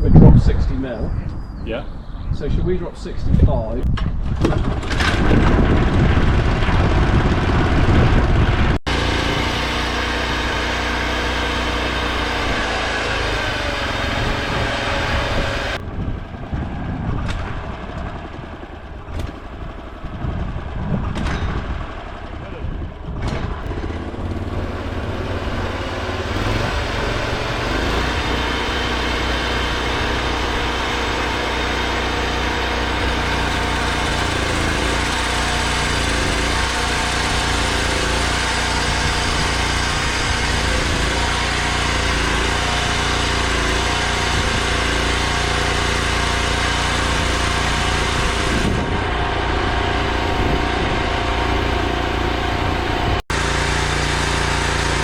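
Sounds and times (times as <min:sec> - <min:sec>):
chainsaw cutting through log: 0:08.8 - 0:15.8, 0:23.7 - 0:55.0.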